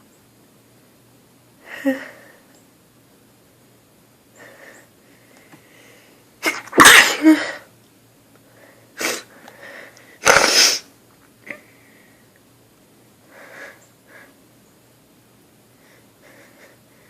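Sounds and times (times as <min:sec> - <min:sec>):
faint breaths: 0:04.3 - 0:06.4, 0:08.4 - 0:10.2, 0:11.5 - 0:12.4, 0:13.2 - 0:14.4, 0:15.7 - 0:17.0
woman sneezing: 0:06.4 - 0:07.6, 0:10.2 - 0:10.9.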